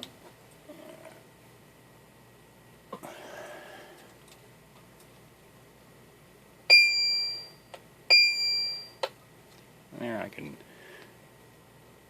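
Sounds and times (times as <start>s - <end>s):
electronic bell-like ping: 6.7s - 9.0s.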